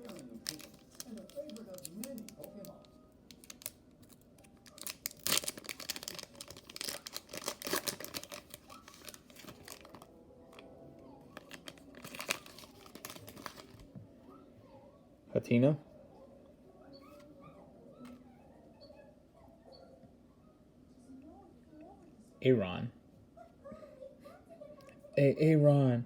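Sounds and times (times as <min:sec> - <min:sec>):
foil wrapper crinkling and tearing: 0:00.0 - 0:10.6, 0:11.3 - 0:13.9.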